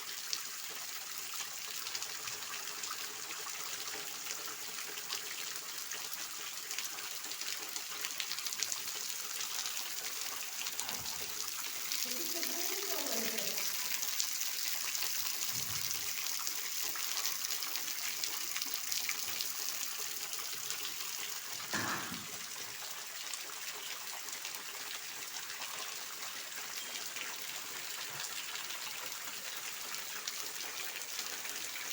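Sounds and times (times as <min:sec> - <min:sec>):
steady rain falling: 0:03.8 - 0:31.9.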